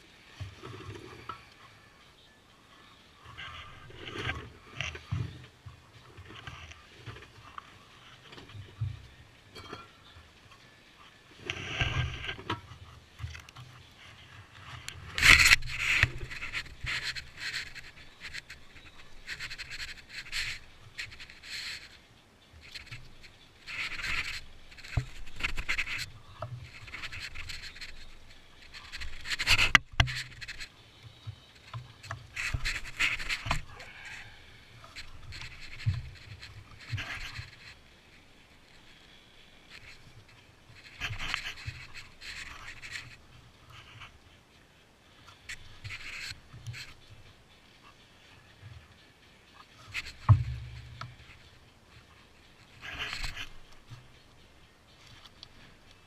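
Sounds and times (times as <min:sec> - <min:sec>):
scraping and rubbing on metal: 0:03.3 - 0:05.4, 0:06.1 - 0:10.1, 0:11.4 - 0:22.0, 0:22.6 - 0:30.7, 0:31.6 - 0:39.0, 0:39.7 - 0:44.2, 0:45.3 - 0:47.1, 0:49.5 - 0:54.2.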